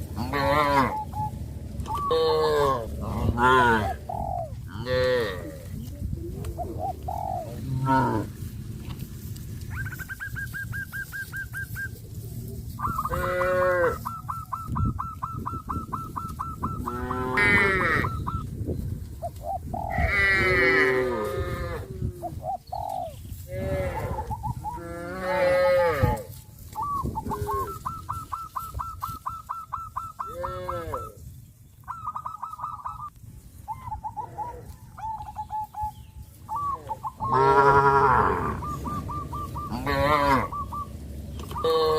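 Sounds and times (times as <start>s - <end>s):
cattle mooing: 0.1s - 1.0s, 2.0s - 4.0s, 4.7s - 5.7s, 7.6s - 8.4s, 13.0s - 14.1s, 16.8s - 18.2s, 23.5s - 26.3s, 37.3s - 38.8s, 39.6s - 40.7s, 41.5s - 41.9s
rapid pulsed high bird calls: 9.6s - 12.1s, 14.0s - 17.0s, 26.7s - 30.4s, 31.0s - 37.5s, 38.4s - 41.9s.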